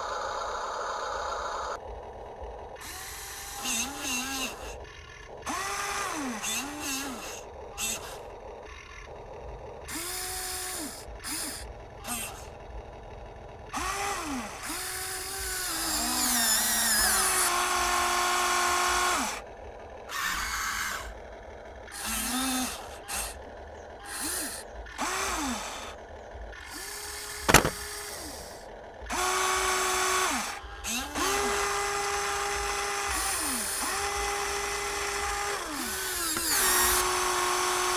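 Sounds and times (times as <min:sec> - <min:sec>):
small electric motors whining: 0:00.0 - 0:37.9
sharp click: 0:27.4 - 0:27.8.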